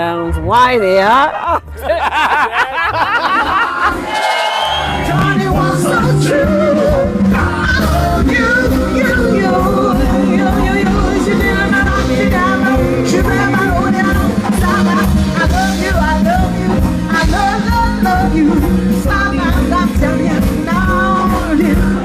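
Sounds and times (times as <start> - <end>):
steady driving beat: 3.9 - 18.2
person singing: 5.0 - 22.0.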